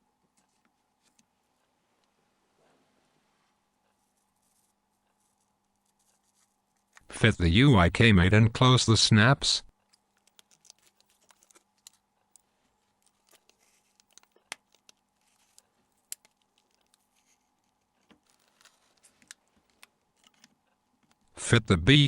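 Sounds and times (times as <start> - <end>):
plastic phone parts clicking: 9.8 - 12.0, 13.0 - 17.0, 18.0 - 21.3.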